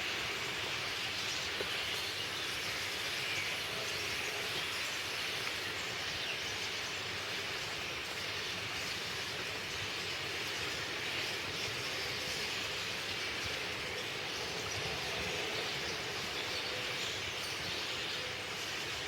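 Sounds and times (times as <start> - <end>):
chorus of birds singing: 0.0 - 19.0.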